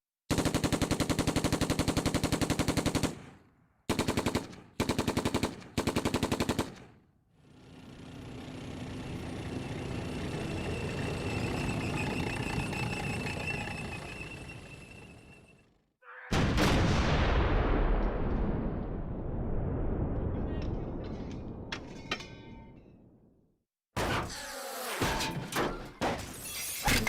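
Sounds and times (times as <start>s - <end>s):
automatic gunfire: 0.3s - 7.0s.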